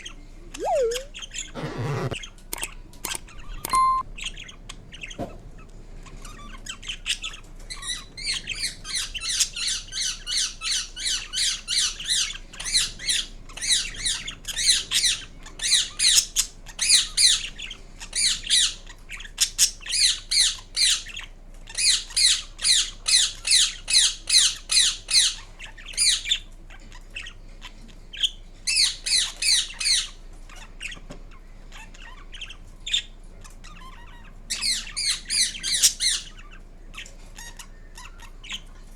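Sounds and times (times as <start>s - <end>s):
parakeet shrill squawks: 0.6s - 2.2s.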